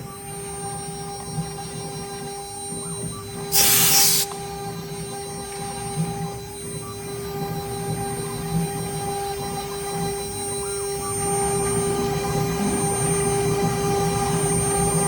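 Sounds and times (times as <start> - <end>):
loud hiss: 3.5 - 4.3.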